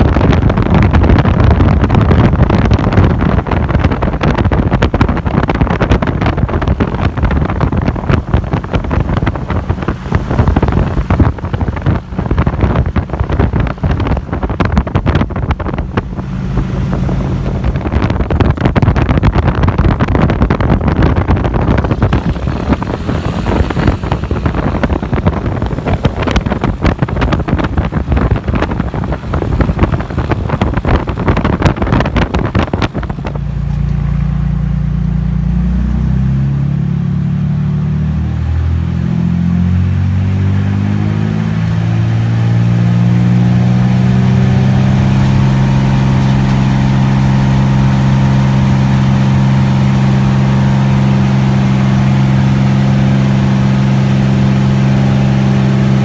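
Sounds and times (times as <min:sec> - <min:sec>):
crackling wind buffet: 0:00.0 - 0:36.7, 0:38.3 - 0:56.0
propeller engine droning: 0:00.0 - 0:56.0.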